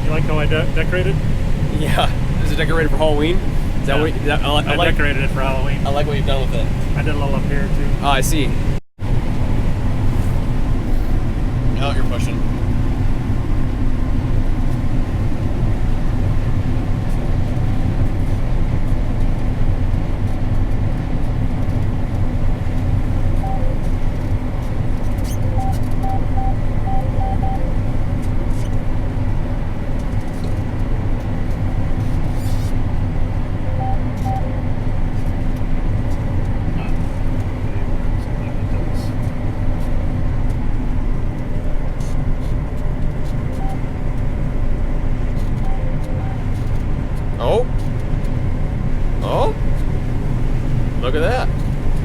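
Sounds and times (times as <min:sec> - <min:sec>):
combine harvester drone: 0:00.0 - 0:52.0
faint short beeps: 0:43.5 - 0:43.9.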